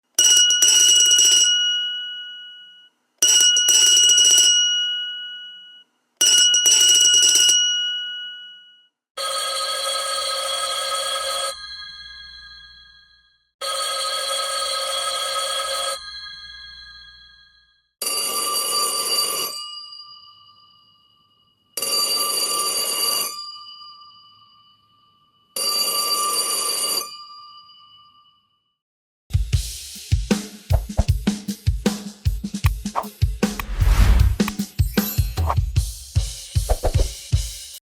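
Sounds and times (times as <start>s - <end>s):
telephone bell ringing: 0.3s - 1.7s, 9.2s - 11.6s, 13.6s - 16.0s, 18.0s - 19.8s, 21.8s - 23.6s, 25.6s - 27.4s
lower-pitched telephone bell: 18.0s - 28.4s.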